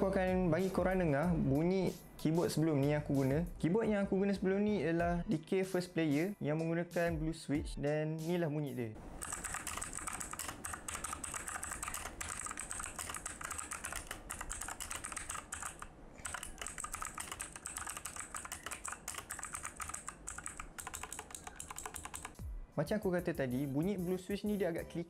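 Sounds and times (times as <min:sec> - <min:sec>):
mechanical keyboard typing: 0:09.0 - 0:22.4.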